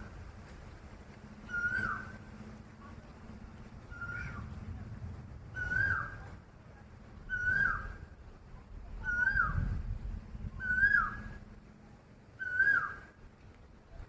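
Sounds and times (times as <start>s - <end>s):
bird whistled call: 1.4s - 2.2s, 3.9s - 4.5s, 5.5s - 6.3s, 7.3s - 8.1s, 9.0s - 9.7s, 10.6s - 11.4s, 12.4s - 13.2s.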